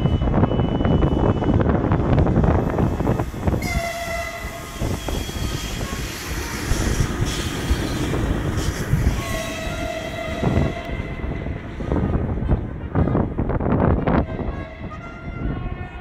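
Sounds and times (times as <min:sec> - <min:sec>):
long horn blasts: 0:03.5 - 0:08.2, 0:09.0 - 0:16.0.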